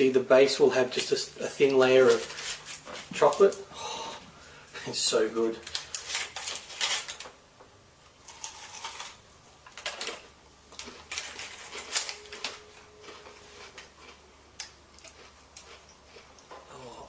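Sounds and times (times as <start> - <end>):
crunchy food being chewed: 8.2 - 9.2, 10.7 - 17.0.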